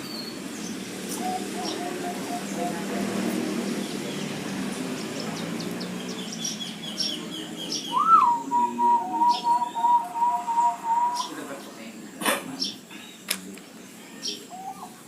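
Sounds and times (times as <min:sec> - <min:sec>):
small bird chirping: 0:00.0 - 0:11.4
dove singing: 0:00.0 - 0:13.2, 0:14.2 - 0:15.0.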